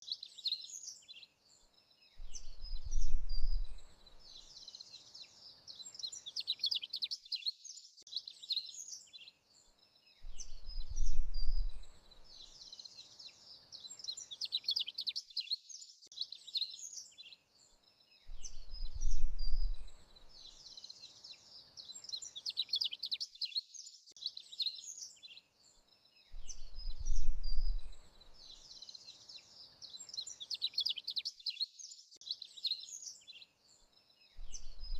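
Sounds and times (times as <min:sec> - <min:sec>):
birds chirping: 0:10.2 - 0:17.4, 0:18.2 - 0:33.5.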